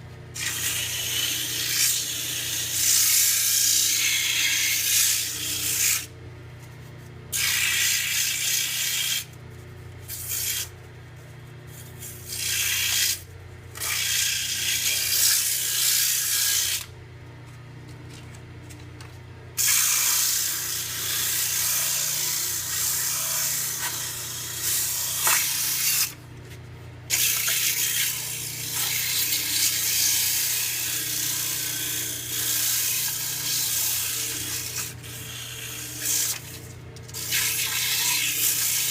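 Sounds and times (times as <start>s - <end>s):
sandpaper hissing on spinning wood: 0.4s - 6.1s, 7.3s - 9.4s, 10.1s - 10.8s, 19.6s - 26.2s, 27.1s - 36.6s, 37.2s - 38.9s.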